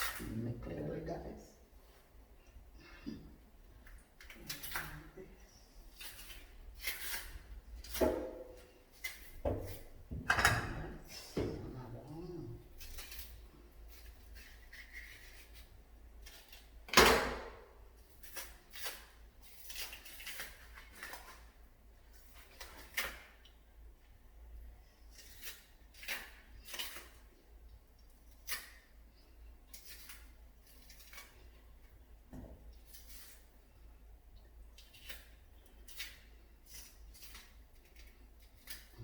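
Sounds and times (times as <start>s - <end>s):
food preparation knocks and scrapes: 6.2s - 11.8s.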